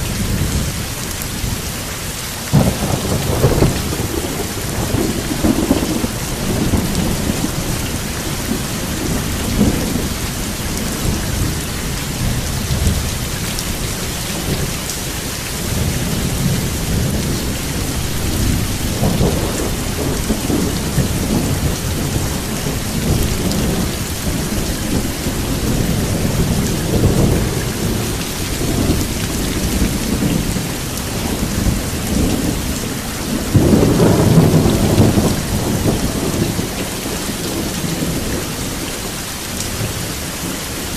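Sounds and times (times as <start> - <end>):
steady rain: 0.0 - 40.9
thunder rumbling: 2.5 - 14.8, 15.5 - 40.9.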